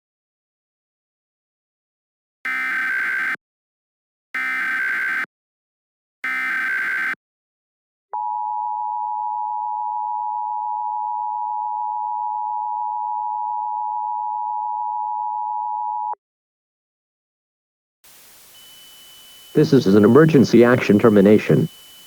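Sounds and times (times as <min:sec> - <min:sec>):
screeching data burst: 0:18.1 - 0:22.0
steady two-tone alert signal: 0:18.6 - 0:22.0.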